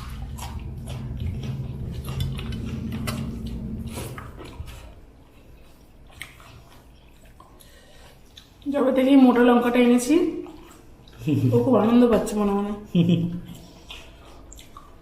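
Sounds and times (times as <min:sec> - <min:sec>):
low hum: 0:00.0 - 0:07.5.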